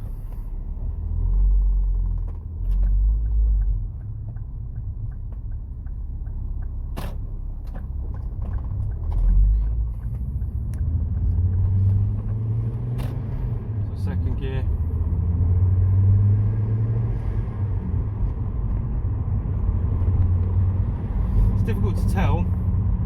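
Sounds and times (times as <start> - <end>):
car engine: 0.0 - 23.0
road noise inside car: 0.0 - 23.0
light regular ticking: 2.7 - 11.6.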